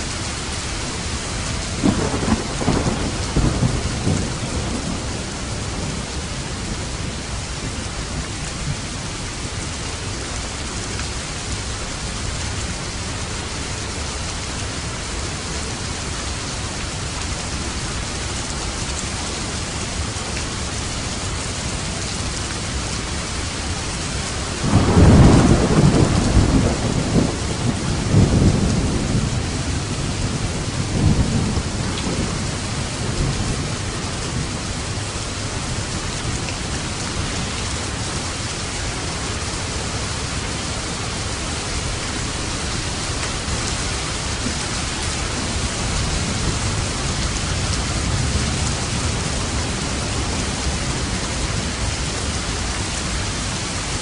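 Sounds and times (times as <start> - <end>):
steady rain falling: 0.0 - 54.0
thunder rumbling: 0.2 - 8.9, 24.2 - 38.6, 39.4 - 54.0.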